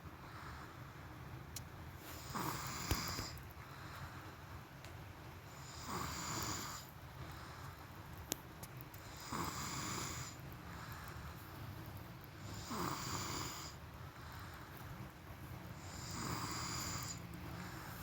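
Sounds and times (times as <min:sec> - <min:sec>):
person snoring: 0:05.6 - 0:06.8, 0:09.1 - 0:10.4, 0:12.5 - 0:13.8, 0:15.8 - 0:17.9.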